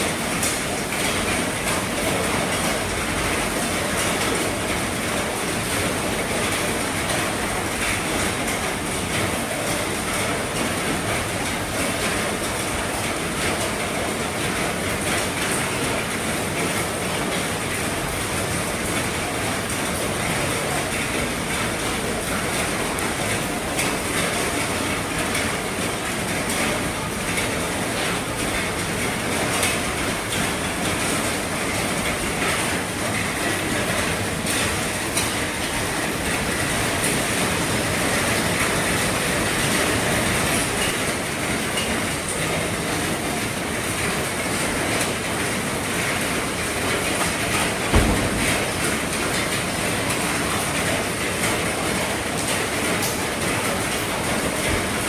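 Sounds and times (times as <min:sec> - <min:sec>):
heavy rain on a roof: 0:00.0 - 0:55.0
raindrops tapping on roof: 0:00.0 - 0:55.0.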